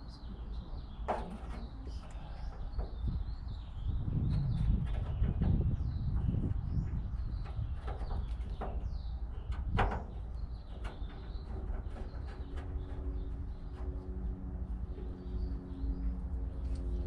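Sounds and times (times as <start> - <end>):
birds chirping: 0.0 - 17.0
multi-tone hum: 8.6 - 17.0.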